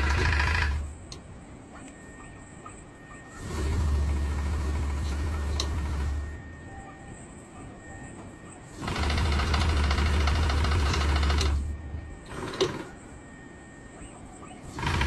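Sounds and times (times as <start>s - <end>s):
machine humming and clattering: 0.0s - 2.0s, 3.2s - 6.6s, 8.2s - 13.1s, 14.6s - 15.0s
faint factory background: 0.0s - 15.0s.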